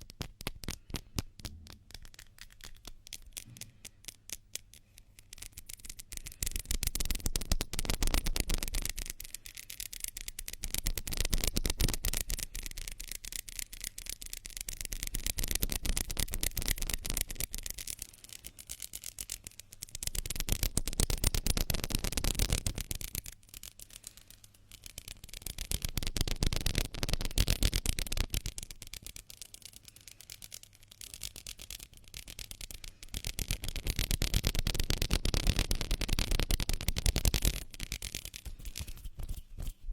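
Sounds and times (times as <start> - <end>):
hands rubbing together: 32.6 - 39.9.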